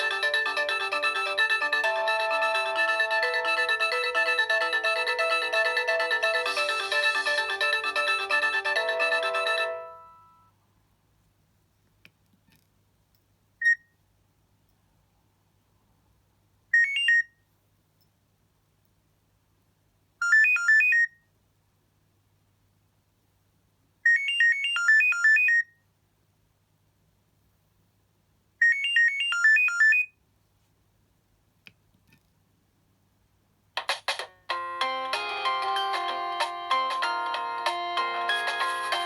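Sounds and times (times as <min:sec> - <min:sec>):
mobile phone ringtone: 0:00.0 - 0:10.5, 0:34.5 - 0:39.0.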